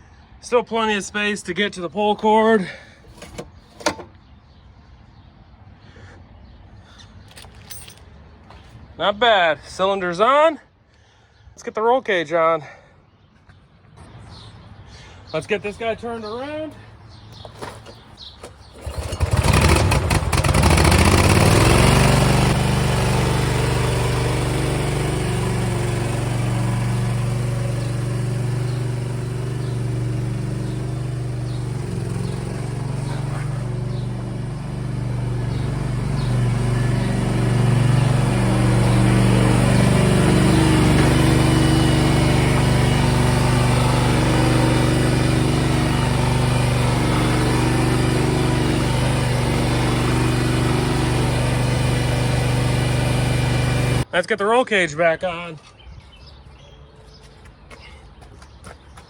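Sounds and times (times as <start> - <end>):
small engine starting and running: 2.6 - 4.2, 17.6 - 54.1.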